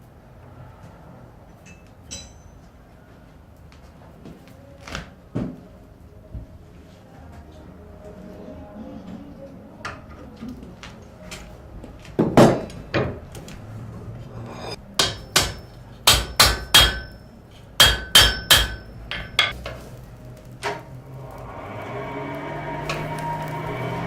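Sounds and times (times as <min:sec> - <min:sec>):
hammer striking metal on anvil: 0:01.7 - 0:02.6, 0:14.5 - 0:19.6.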